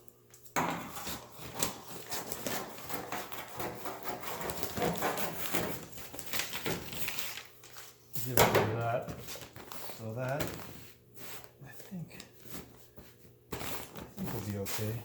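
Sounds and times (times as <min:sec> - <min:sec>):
paper rustling and crinkling: 0:01.0 - 0:08.0, 0:09.0 - 0:15.0.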